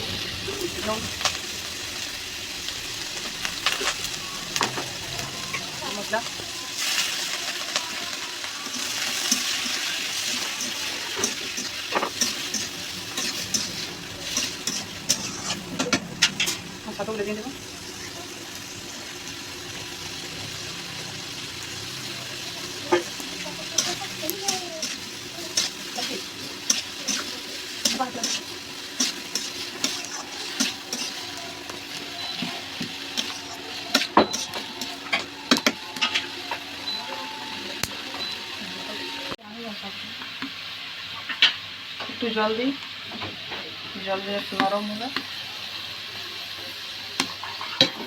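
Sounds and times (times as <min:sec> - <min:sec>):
vegetables sizzling in oil: 0:00.0 - 0:48.0
spatula scraping pan: 0:08.7 - 0:17.4, 0:22.3 - 0:36.4.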